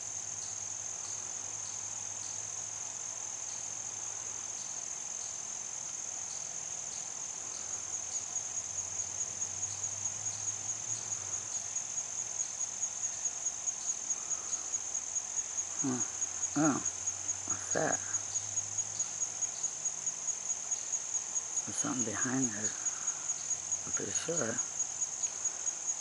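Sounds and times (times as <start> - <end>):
night insects trilling: 0.0 - 26.0.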